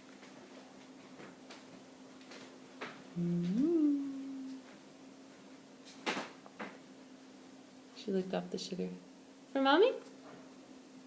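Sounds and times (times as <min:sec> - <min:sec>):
faint steady hum: 0:00.0 - 0:11.0
person humming: 0:03.2 - 0:04.7.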